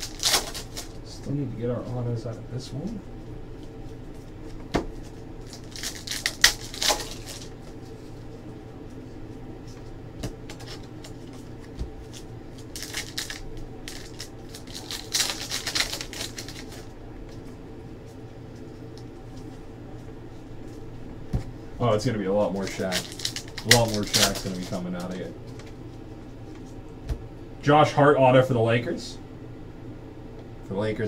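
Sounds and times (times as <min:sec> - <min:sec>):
foil wrappers crinkling: 0:00.0 - 0:01.1, 0:05.0 - 0:08.2, 0:10.5 - 0:17.0, 0:22.0 - 0:25.8
cards being shuffled: 0:10.2 - 0:16.9, 0:22.5 - 0:26.0.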